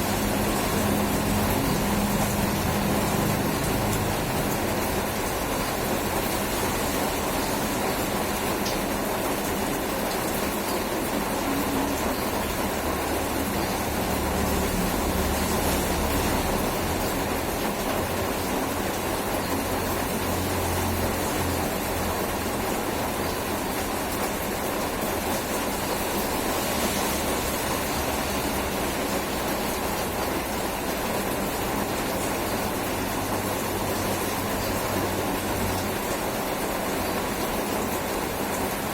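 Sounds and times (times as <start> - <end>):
steady rain: 0.0 - 38.9.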